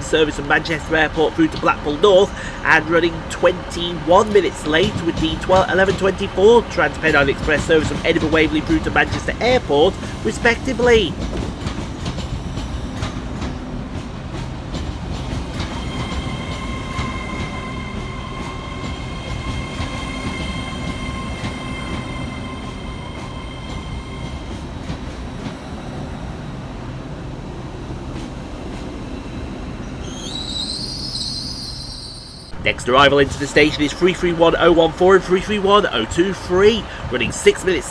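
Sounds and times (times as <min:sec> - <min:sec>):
wheels clicking over rail joints: 0:00.0 - 0:16.5
train wheels squealing: 0:00.0 - 0:27.0, 0:28.1 - 0:32.6
train rumbling: 0:00.0 - 0:30.8, 0:32.5 - 0:37.9.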